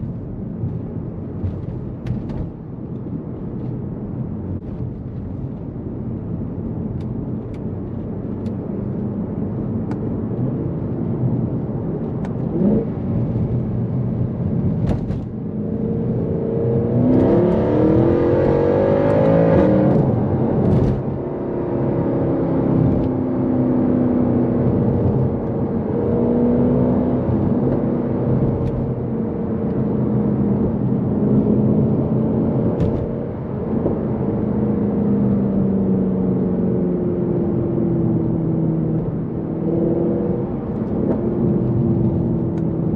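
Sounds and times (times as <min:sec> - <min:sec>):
car engine accelerating: 0:11.6 - 0:42.9.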